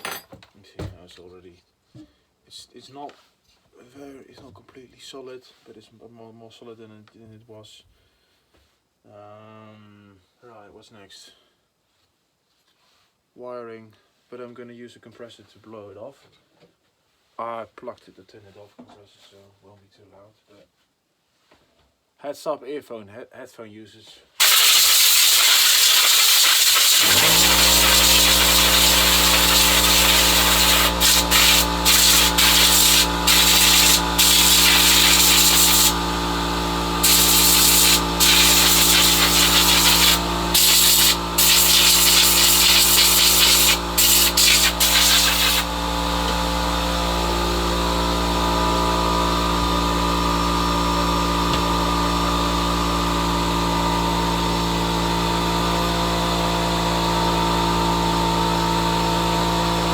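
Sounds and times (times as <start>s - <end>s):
compressed air blasts hissing: 24.4s - 46.7s
air compressor running: 24.4s - 59.9s.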